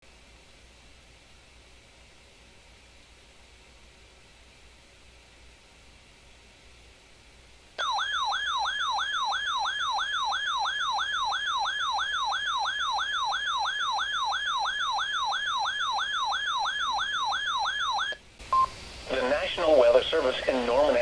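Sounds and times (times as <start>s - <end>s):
warbling siren alarm: 7.8s - 18.2s.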